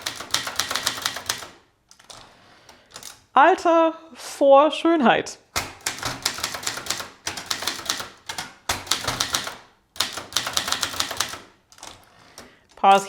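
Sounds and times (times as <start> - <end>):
typewriter keys clicking: 0.0 - 3.2, 5.6 - 13.0.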